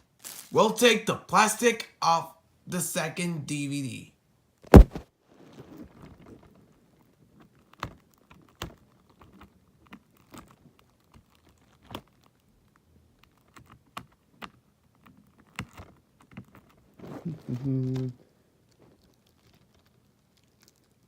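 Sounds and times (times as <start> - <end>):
plastic wrap peeled crackling: 0.0 - 0.6, 4.7 - 13.9, 14.9 - 21.0.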